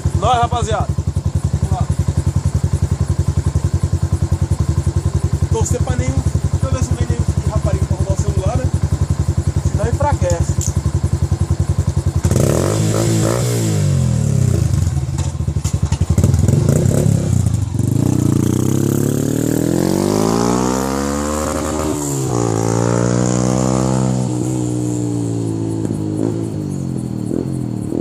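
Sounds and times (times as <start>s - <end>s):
motorcycle engine revving: 0.0s - 28.0s.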